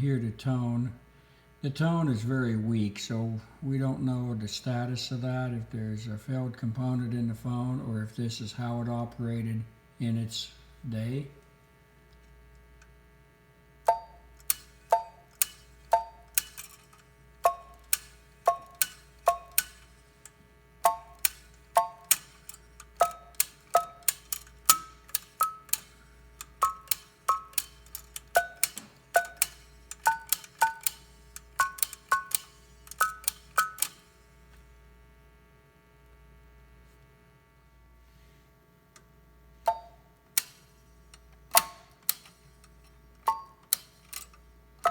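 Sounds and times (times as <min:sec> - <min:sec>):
telephone button clicks with tones: 0:13.9 - 0:16.8, 0:17.4 - 0:19.9, 0:20.9 - 0:34.0, 0:39.7 - 0:40.6, 0:43.2 - 0:44.9.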